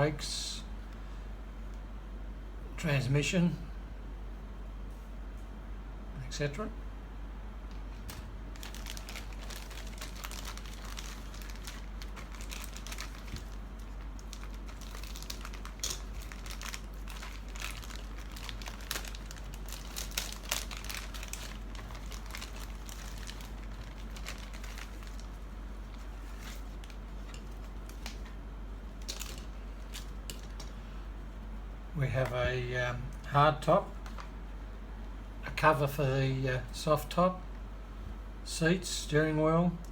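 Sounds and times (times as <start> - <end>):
plastic bags crinkling: 8.4 - 30.8.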